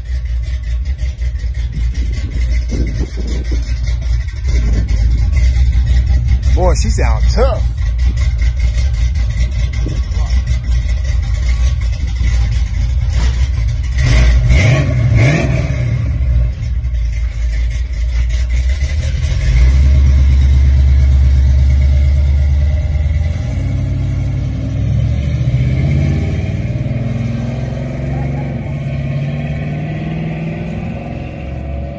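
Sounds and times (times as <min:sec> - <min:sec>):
car engine revving and idling: 0:00.0 - 0:31.9.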